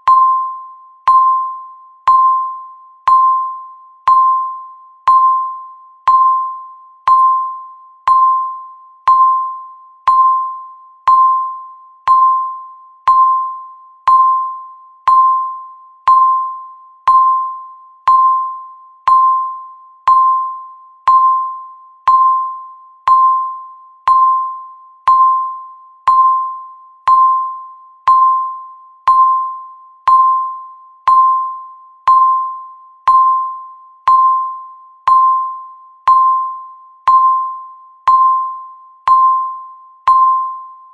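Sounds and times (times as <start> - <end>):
timer ticking ding: 0.0 - 40.9.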